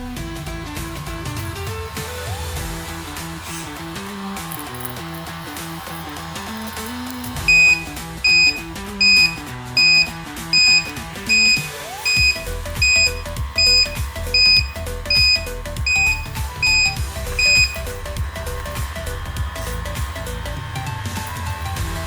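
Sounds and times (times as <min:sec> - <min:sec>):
background music: 0:00.0 - 0:22.0
high reversing warning beeps: 0:07.4 - 0:20.6.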